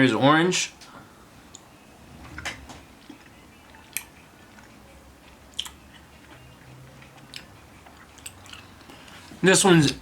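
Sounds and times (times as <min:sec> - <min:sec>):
person chewing gummy candy: 0:05.5 - 0:06.4, 0:07.2 - 0:09.1.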